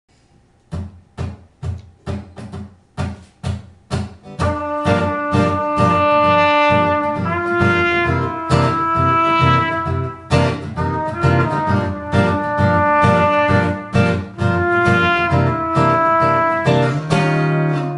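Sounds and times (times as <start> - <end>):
percussive beat: 0.7 - 17.9
held melody line: 4.4 - 17.9.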